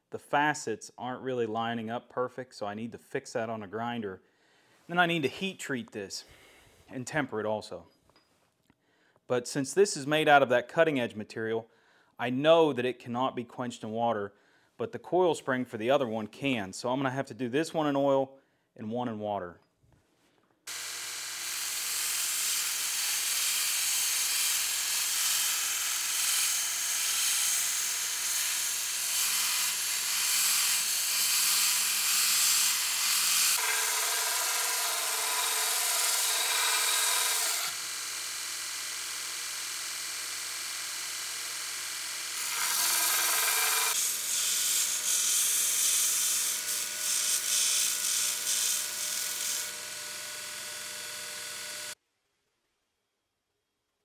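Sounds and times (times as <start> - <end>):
power grinder grinding metal: 20.7 - 52.0.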